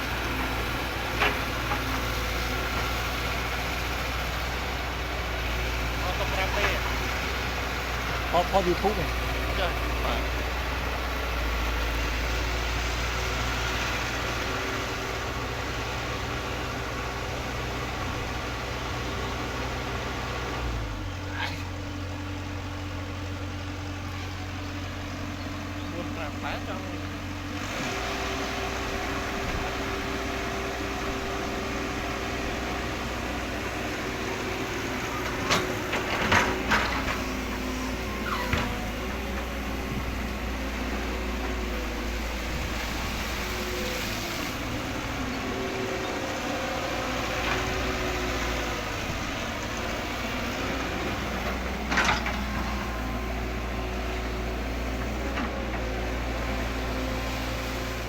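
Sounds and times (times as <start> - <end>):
electric motors whining: 27.6 - 56.9.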